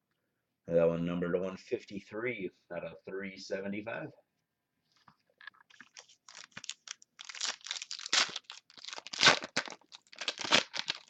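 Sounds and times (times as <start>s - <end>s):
foil wrapper tearing and crinkling: 5.8s - 11.0s.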